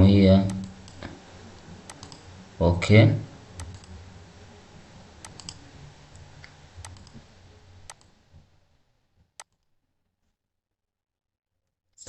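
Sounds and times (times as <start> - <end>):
faint low hum: 0.0 - 9.4
computer clicks: 0.4 - 2.6, 3.5 - 4.0, 5.1 - 8.1.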